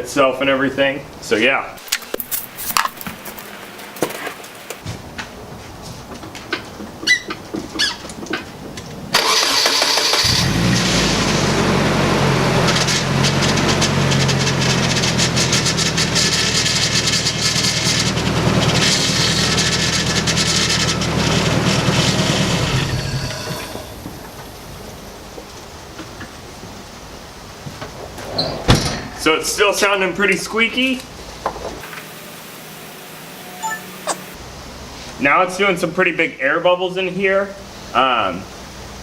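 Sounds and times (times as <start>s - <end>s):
car engine cranking and idling: 9.1s - 28.2s.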